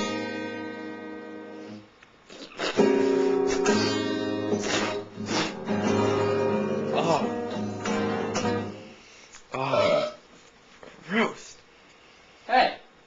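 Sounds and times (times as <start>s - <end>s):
strummed guitar chords: 0.0s - 1.8s, 2.8s - 9.0s.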